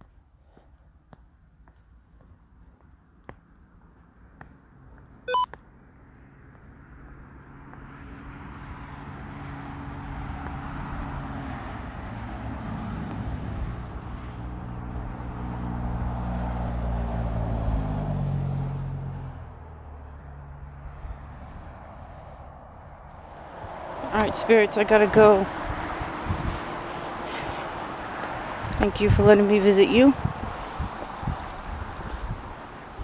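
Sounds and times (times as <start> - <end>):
short electronic beep: 5.3 - 5.5
vehicle engine passing by: 7.5 - 33.0.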